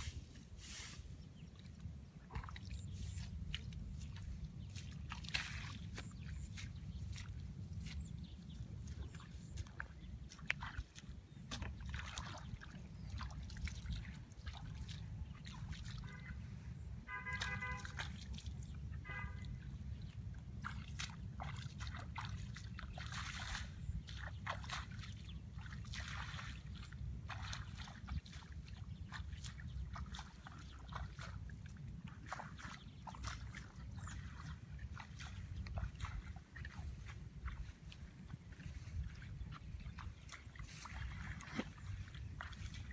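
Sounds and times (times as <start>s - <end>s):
water sloshing and splashing: 0.0s - 42.9s
steady low rumble: 33.0s - 42.9s.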